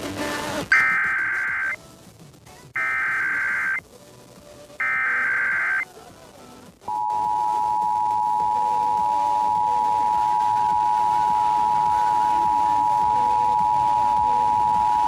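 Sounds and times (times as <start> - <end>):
two-tone attention signal: 0.7 - 1.8, 2.8 - 3.8, 4.8 - 5.8, 6.9 - 15.0
warbling digital data tones: 0.7 - 1.8, 2.8 - 3.8, 4.8 - 5.8.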